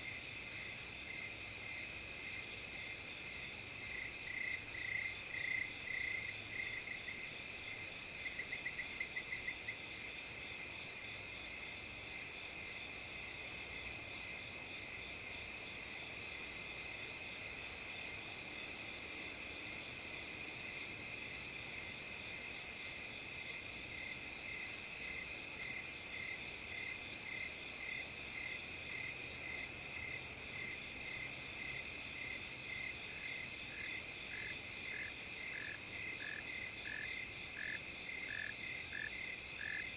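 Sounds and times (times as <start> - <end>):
crickets trilling: 21.4 - 39.9.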